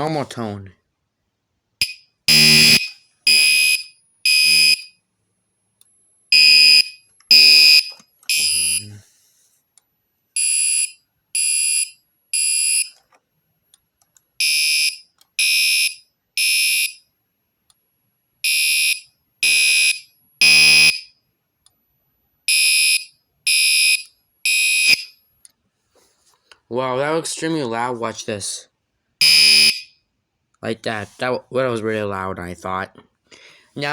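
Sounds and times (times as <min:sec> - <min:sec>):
loud high-pitched fire alarm horn: 0:02.3 - 0:04.9, 0:19.4 - 0:21.1, 0:29.2 - 0:29.9.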